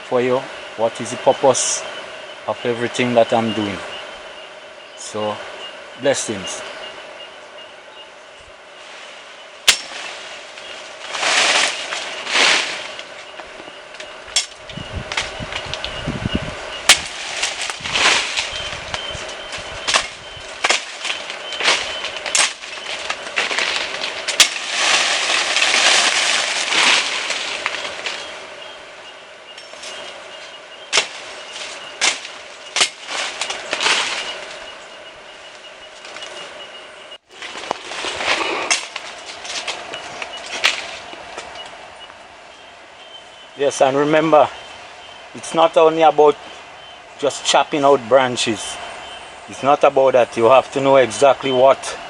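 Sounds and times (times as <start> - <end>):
leafy branches rustling: 0.0 - 52.0.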